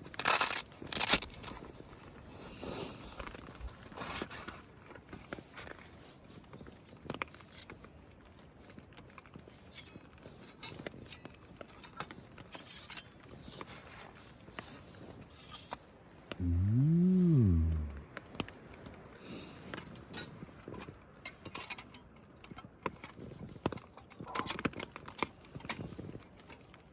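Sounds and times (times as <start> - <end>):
rising and falling tone: 16.4 - 18.1.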